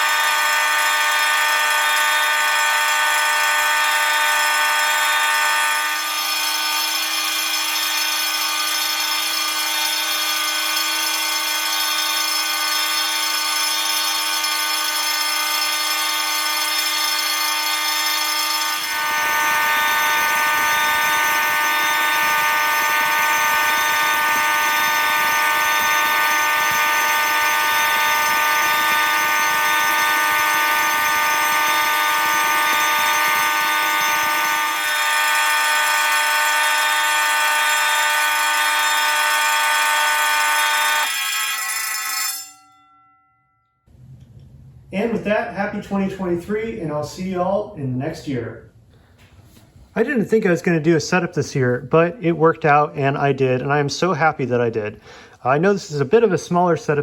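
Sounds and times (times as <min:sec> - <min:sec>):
coarse rattling alarm tone: 0:00.0 - 0:43.9
fire alarm horn tones: 0:00.0 - 0:43.9.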